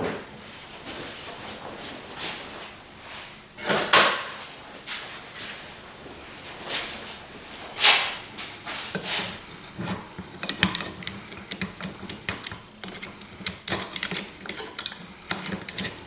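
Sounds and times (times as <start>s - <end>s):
metal hand tools clinking: 8.9s - 16.0s.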